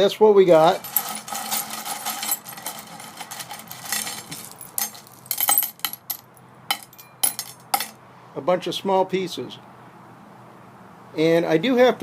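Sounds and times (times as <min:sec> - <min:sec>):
metal nuggets clinking: 0:00.6 - 0:08.0.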